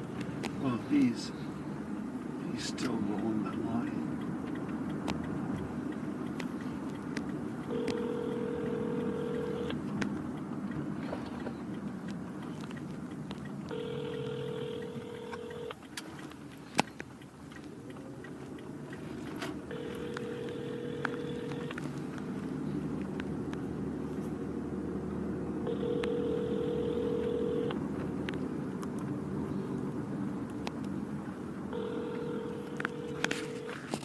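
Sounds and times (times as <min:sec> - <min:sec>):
telephone ringback tone: 0:07.7 - 0:09.8, 0:13.7 - 0:15.8, 0:19.7 - 0:21.8, 0:25.7 - 0:27.8, 0:31.7 - 0:34.0.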